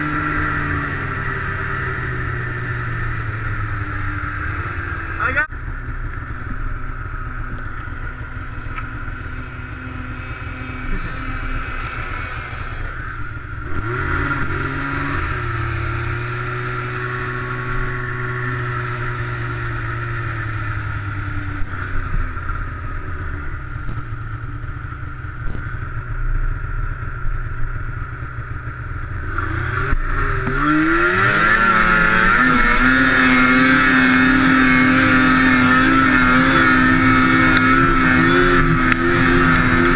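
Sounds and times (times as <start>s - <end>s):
snowmobile engine revving: 0.0s - 25.8s, 29.0s - 39.9s.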